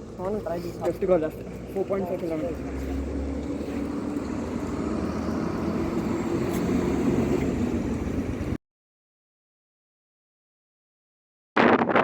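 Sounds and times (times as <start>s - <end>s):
vehicle engine running: 0.0s - 8.6s
wind and road noise: 0.0s - 8.6s, 11.6s - 12.0s.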